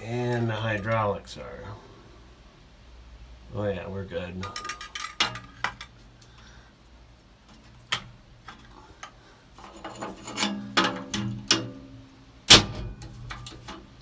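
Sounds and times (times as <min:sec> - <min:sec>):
rustling and clatter: 0:07.2 - 0:14.0.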